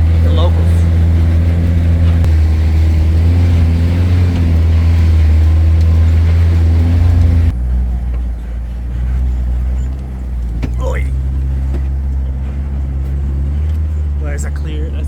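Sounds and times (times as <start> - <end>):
road noise: 0.0 - 15.0
truck engine drone: 0.0 - 15.0.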